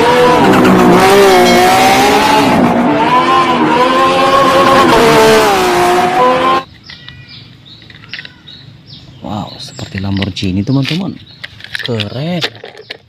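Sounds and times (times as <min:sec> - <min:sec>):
race car engine revving: 0:00.0 - 0:06.7.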